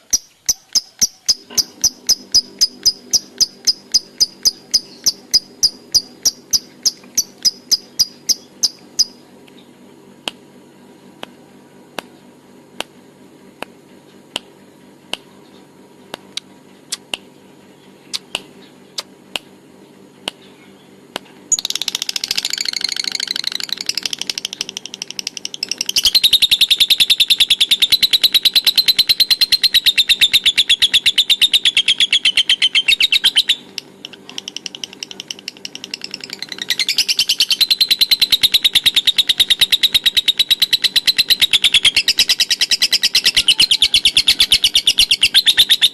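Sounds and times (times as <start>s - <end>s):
lovebird chattering call: 0.0s - 9.2s, 21.5s - 45.9s.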